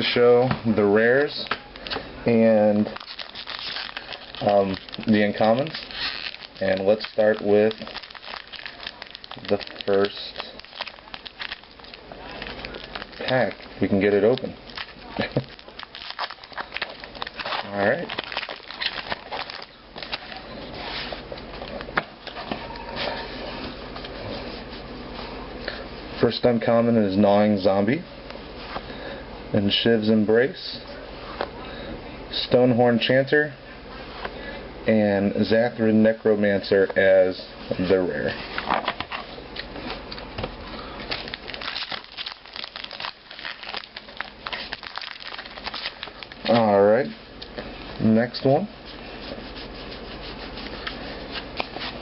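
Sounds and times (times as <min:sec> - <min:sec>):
foil wrapper crinkling: 0:02.6 - 0:21.0, 0:40.8 - 0:47.1
trading cards being handled: 0:02.8 - 0:21.8.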